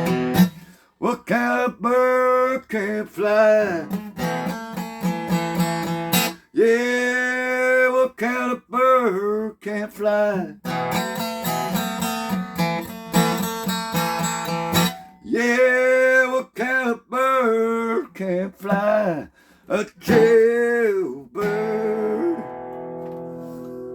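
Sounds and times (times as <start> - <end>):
acoustic guitar strumming: 0.0 - 0.7, 3.3 - 6.4, 10.6 - 16.2, 20.0 - 23.9
person singing long notes: 20.0 - 23.9.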